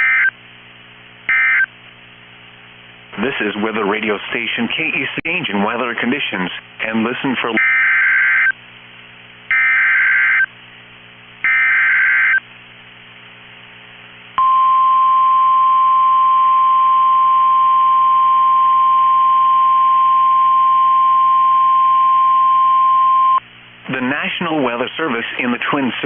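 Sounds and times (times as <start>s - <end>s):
steady warning alarm tone: 0.0s - 0.3s, 1.3s - 1.7s, 7.6s - 8.6s, 9.5s - 10.5s, 11.4s - 12.4s.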